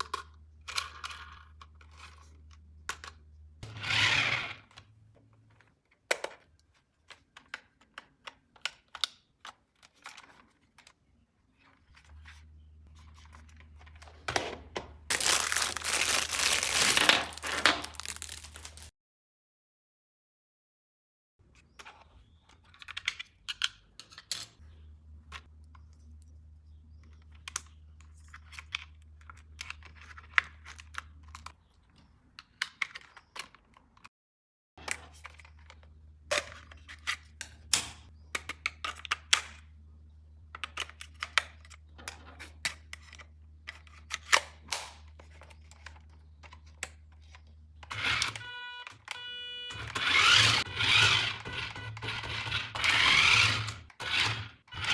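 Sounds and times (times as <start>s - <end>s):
plastic toy parts clicking: 5.9s - 11.0s, 22.5s - 24.6s
buzzing electronic tone: 48.0s - 52.1s.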